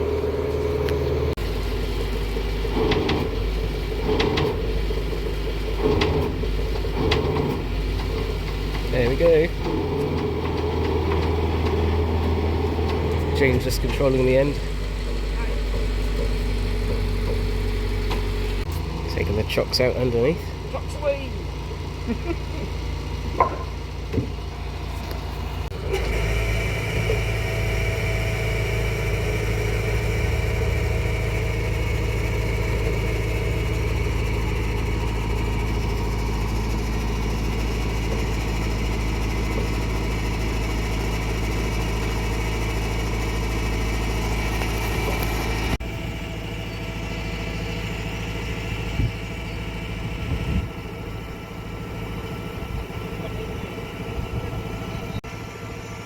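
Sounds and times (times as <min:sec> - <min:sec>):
machine engine running: 0:00.0 - 0:56.0
short knocks: 0:14.6 - 0:18.7.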